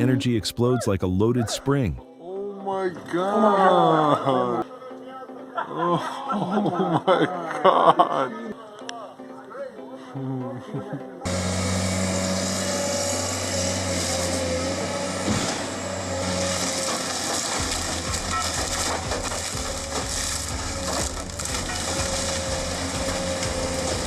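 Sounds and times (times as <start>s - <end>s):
engine running: 11.2s - 24.0s.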